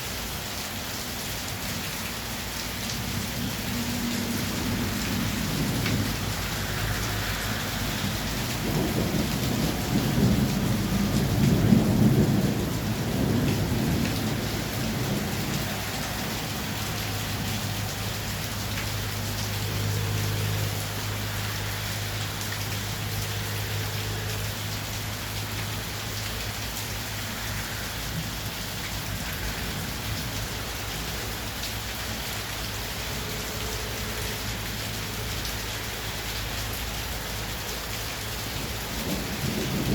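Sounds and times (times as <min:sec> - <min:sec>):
heavy rain falling: 0:00.0 - 0:39.9
low roll of thunder: 0:03.8 - 0:18.3, 0:38.6 - 0:39.9.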